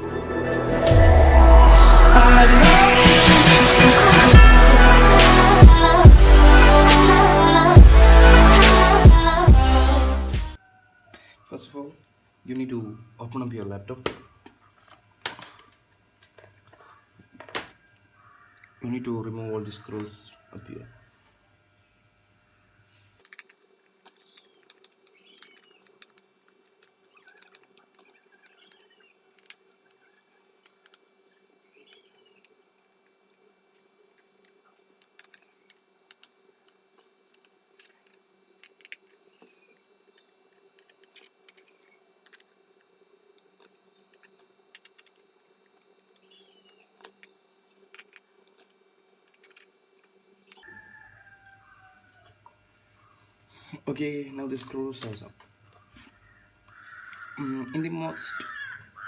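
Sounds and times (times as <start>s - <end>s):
steady low hum: 0.6s - 10.6s
faint birds chirping: 16.7s - 21.3s, 24.1s - 52.3s, 52.9s - 54.9s, 55.6s - 59.0s.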